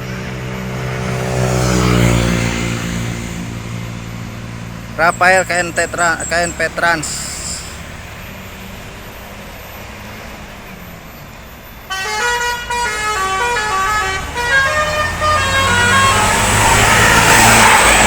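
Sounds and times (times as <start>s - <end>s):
engine and road rumble: 0.0s - 18.0s
horn playing fast melody: 11.9s - 18.0s.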